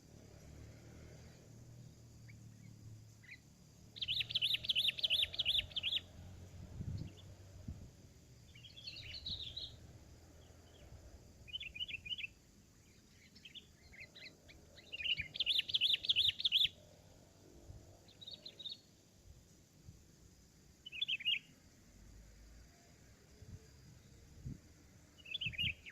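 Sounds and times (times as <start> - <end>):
bulbuls calling: 2.3 - 6.2, 13.0 - 16.8.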